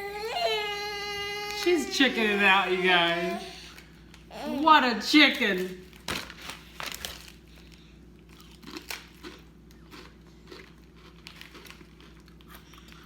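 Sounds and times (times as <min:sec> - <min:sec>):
person chewing crunchy food: 0:08.1 - 0:13.0.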